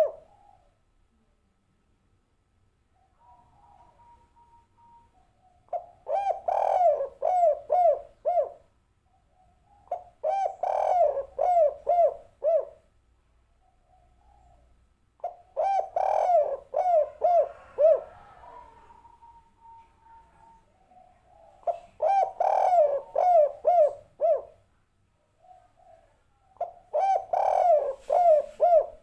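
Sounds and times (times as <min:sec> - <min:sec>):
dove cooing: 0:00.0 - 0:00.8, 0:03.0 - 0:12.8, 0:13.6 - 0:24.6, 0:25.4 - 0:29.0.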